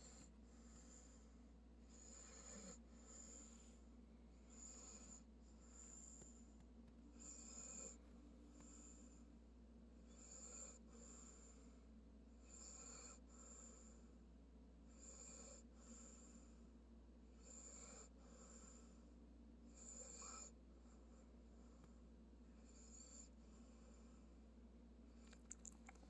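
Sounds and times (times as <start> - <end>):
animal snoring faintly: 0.0 - 3.8, 4.4 - 6.5, 7.1 - 9.2, 10.1 - 11.7, 12.4 - 14.0, 14.9 - 16.6, 17.4 - 19.0, 19.7 - 21.0, 22.6 - 24.2.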